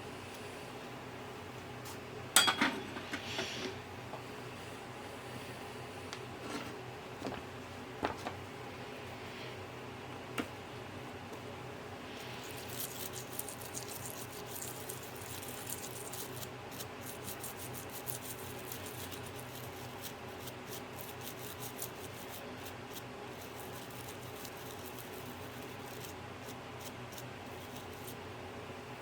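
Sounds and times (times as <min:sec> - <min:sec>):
steady low hum: 0:00.0 - 0:29.0
small scratching and ticking: 0:12.2 - 0:28.2.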